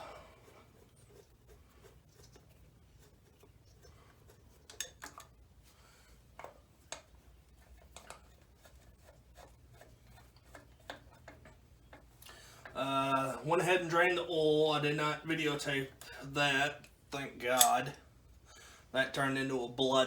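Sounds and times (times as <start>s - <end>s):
hand tools clicking and tapping: 4.6s - 5.4s, 17.6s - 17.8s.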